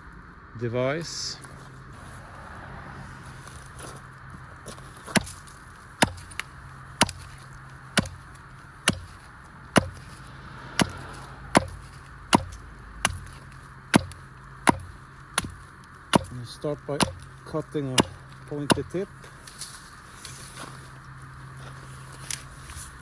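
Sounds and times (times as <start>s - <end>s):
blade chopping into wood: 5.1s - 19.0s.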